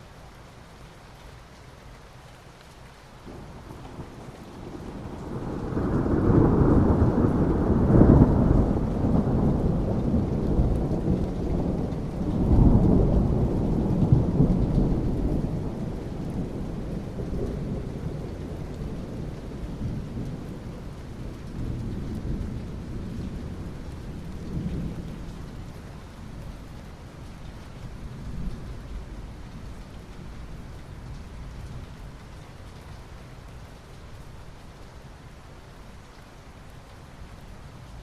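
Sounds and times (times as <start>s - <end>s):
rain on asphalt: 0.0s - 38.0s
rolling thunder: 3.3s - 25.6s.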